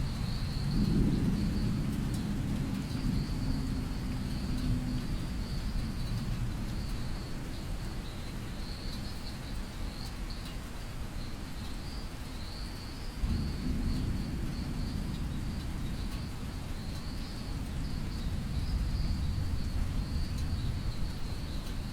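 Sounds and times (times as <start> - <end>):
distant thunder rumbling: 0.0 - 7.8, 13.2 - 21.9
insects chirring: 0.0 - 10.5, 11.2 - 21.9
rain hissing: 0.0 - 21.9.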